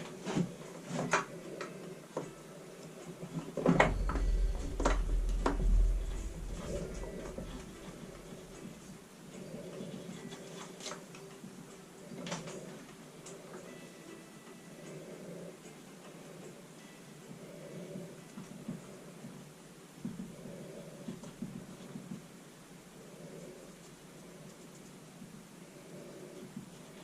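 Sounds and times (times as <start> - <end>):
low rumble: 3.8 - 9.0.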